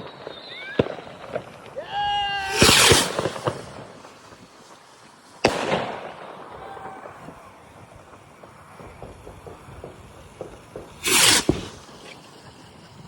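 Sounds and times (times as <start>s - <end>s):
sharp firework bang: 0.0s - 3.9s, 5.4s - 7.5s, 8.7s - 12.2s
whistling firework shell bursting: 0.0s - 4.8s, 5.4s - 13.0s
firework crackle: 0.0s - 13.0s.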